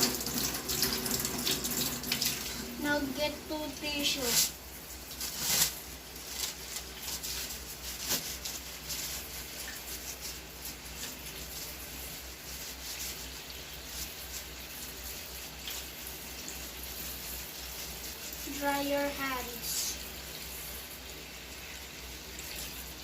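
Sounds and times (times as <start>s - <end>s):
paper tissues crinkling: 4.0s - 15.9s.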